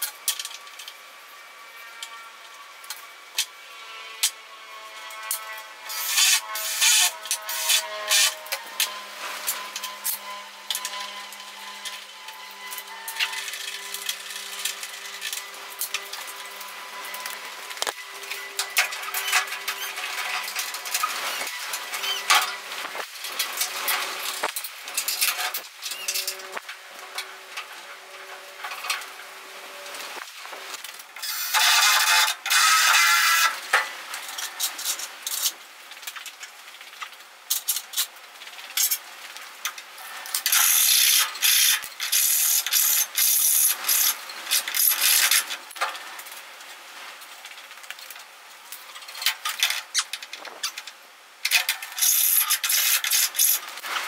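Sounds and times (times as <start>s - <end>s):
power tool or air burst: 5.8s - 8.5s, 31.2s - 33.6s, 40.5s - 45.4s, 52.0s - 53.6s
metal parts clicking and knocking: 39.7s - 46.0s, 48.0s - 54.0s.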